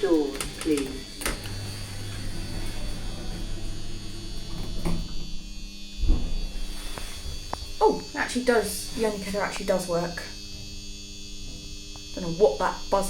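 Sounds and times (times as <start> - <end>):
lift humming with electrical buzz: 0.0 - 13.0
low thump: 6.0 - 6.6.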